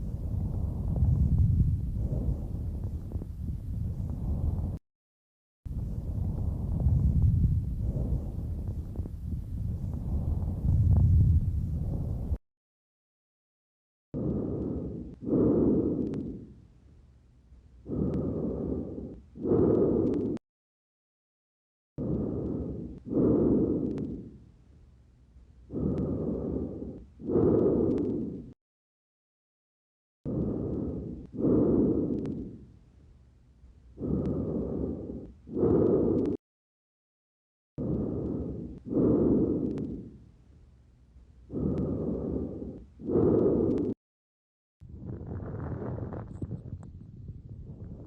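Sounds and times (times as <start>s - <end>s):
lung breath sounds through stethoscope: 0.0s - 4.8s, 5.7s - 12.4s, 14.2s - 16.6s, 17.8s - 20.4s, 22.0s - 24.4s, 25.6s - 28.6s, 30.3s - 32.8s, 33.9s - 36.4s, 37.8s - 40.3s, 41.4s - 44.0s
faint clicks: 16.0s - 16.4s, 19.1s - 20.4s, 23.8s - 24.2s, 27.8s - 28.2s, 32.1s - 32.4s, 39.6s - 40.0s.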